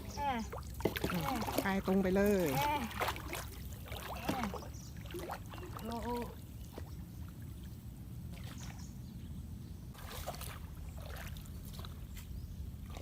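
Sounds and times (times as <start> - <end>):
paddle splashing in water: 0.0 - 8.9, 9.9 - 13.0
steady low rumble: 4.6 - 13.0.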